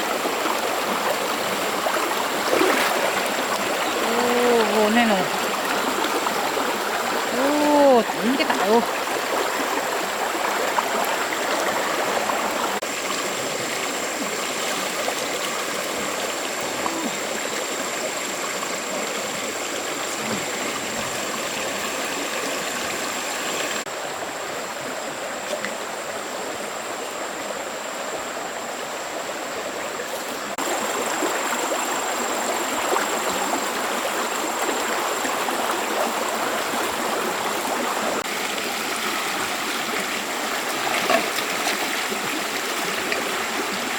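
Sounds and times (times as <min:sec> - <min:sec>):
stream water flowing: 0:00.0 - 0:43.9.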